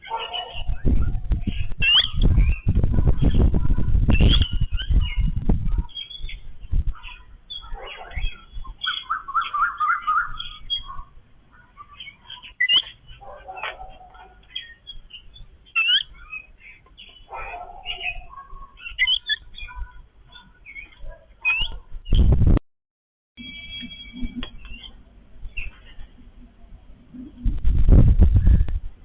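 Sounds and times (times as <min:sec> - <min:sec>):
babblers chirping: 0:00.0 - 0:21.9.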